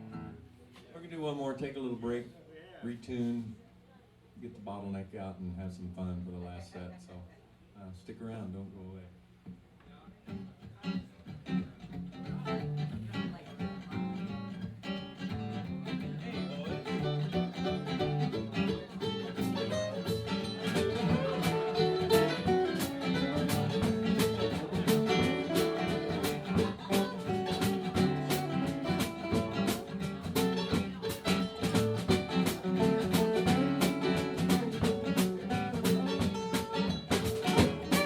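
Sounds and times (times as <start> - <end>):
guitar playing: 0.0 - 0.7, 10.3 - 38.0.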